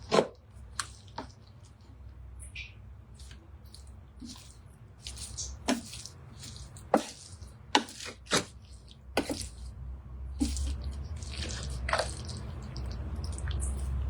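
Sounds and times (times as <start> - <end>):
spatula scraping in a pan: 4.2 - 9.7.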